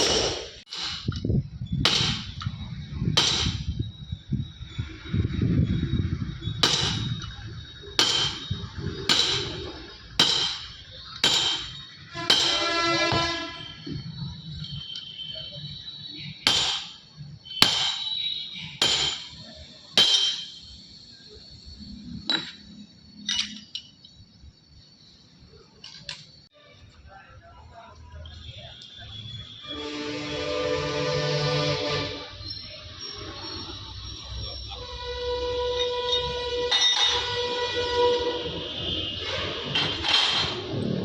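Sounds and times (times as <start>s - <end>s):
hammer striking metal: 0.0s - 1.2s, 1.8s - 3.8s, 6.6s - 7.4s, 8.0s - 13.4s, 16.4s - 20.8s.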